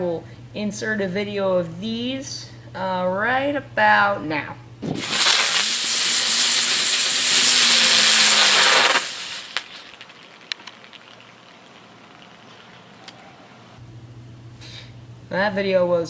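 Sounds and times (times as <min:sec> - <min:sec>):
firework hissing: 0:04.9 - 0:12.8
faint clicks: 0:09.6 - 0:13.2.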